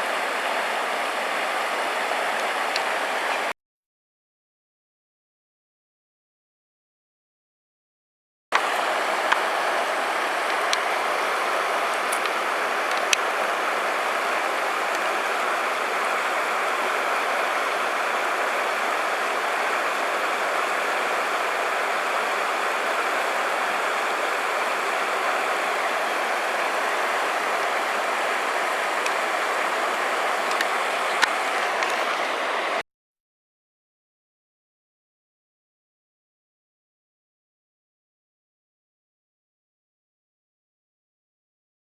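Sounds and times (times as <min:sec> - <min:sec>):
running water: 0:00.0 - 0:03.5, 0:08.6 - 0:32.8
faint clicks: 0:10.2 - 0:16.4.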